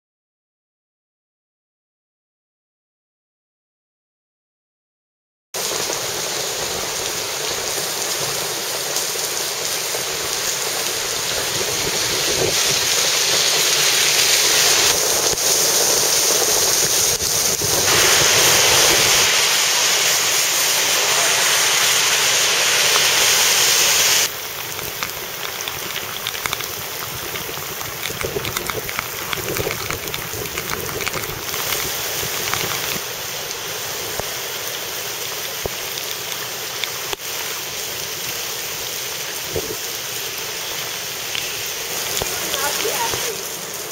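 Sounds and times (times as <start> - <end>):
wind and rain rushing: 5.6 - 43.9
wind buffeting microphone: 11.2 - 12.9, 24.8 - 33.0.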